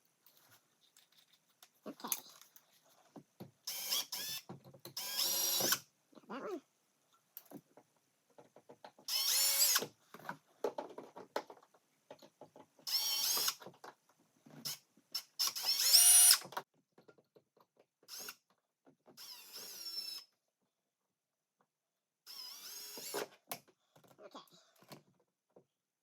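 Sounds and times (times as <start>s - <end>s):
power drill whining: 3.7s - 4.4s, 5.0s - 5.8s, 9.1s - 9.9s, 12.9s - 13.6s, 15.4s - 16.4s, 19.2s - 20.2s, 22.3s - 23.2s.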